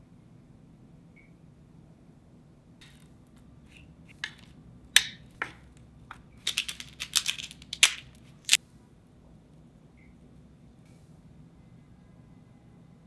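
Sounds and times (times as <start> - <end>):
kitchen clicks and knocks: 3.7 - 8.6.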